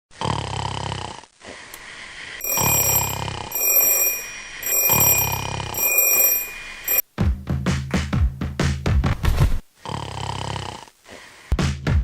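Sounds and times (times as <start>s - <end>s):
person snoring: 0.2s - 1.7s
high electronic ringing: 2.4s - 7.0s.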